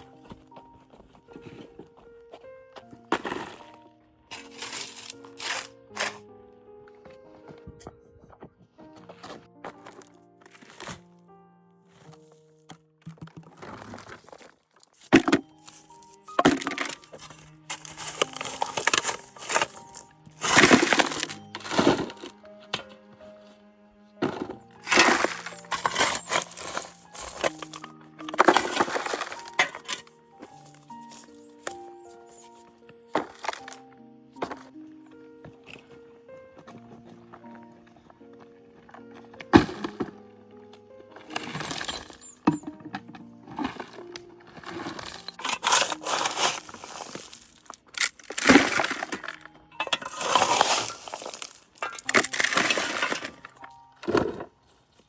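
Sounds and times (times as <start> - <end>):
background music: 0.0 - 55.0
stones and rubble crashing: 13.0 - 22.3, 24.2 - 31.9, 33.0 - 33.8, 38.8 - 40.2, 41.1 - 54.6.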